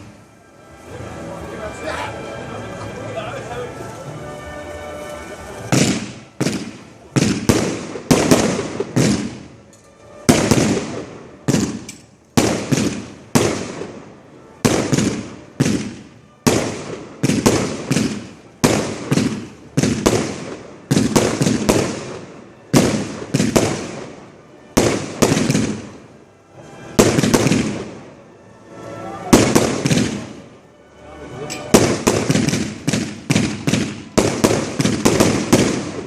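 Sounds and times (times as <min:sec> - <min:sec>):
fireworks bangs with rumbling echo: 0:05.6 - 0:26.1, 0:26.8 - 0:28.2, 0:29.3 - 0:30.6, 0:31.6 - 0:36.0.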